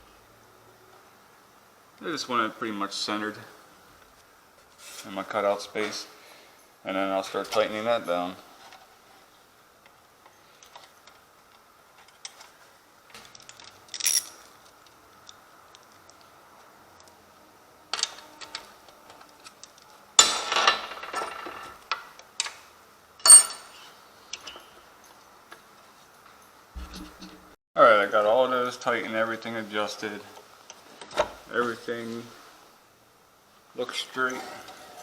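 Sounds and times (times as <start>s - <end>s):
metal tools clinking: 13.1s - 16.2s, 19.4s - 21.9s, 23.2s - 25.3s
metal on metal clatter: 19.4s - 22.5s, 23.2s - 24.8s.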